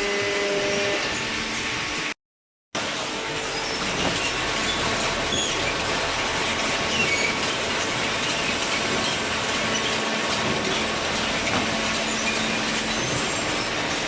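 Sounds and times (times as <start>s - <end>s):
baler mechanical noise: 2.8s - 14.0s
short high-pitched squeaks: 3.4s - 5.8s, 6.9s - 10.0s, 10.6s - 13.9s.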